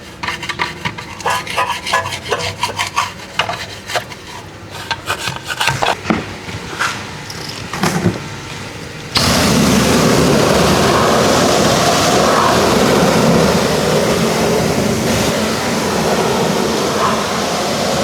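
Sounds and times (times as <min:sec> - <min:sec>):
pressure washer spraying: 0:08.2 - 0:18.0.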